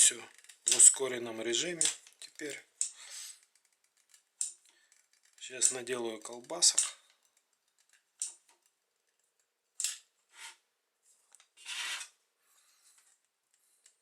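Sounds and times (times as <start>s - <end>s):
hand extruder gun clicks and scrapes: 0.3s - 1.0s, 1.8s - 8.7s
rasping scrape: 11.6s - 12.2s.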